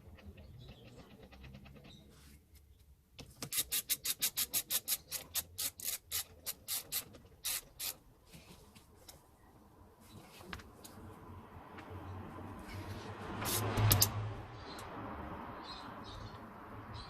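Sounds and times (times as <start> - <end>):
ratchet wrench clicking: 3.4 - 8.0, 13.5 - 14.2.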